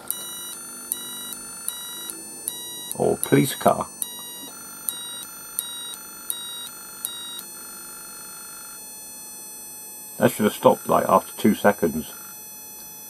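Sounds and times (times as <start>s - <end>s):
electronic doorbell two-note tone: 0.0s - 9.0s.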